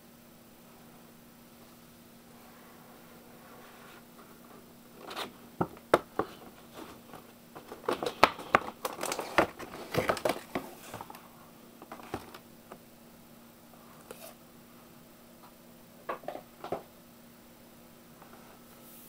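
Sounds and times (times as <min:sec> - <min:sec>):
plastic packaging crinkling: 0:06.7 - 0:11.2.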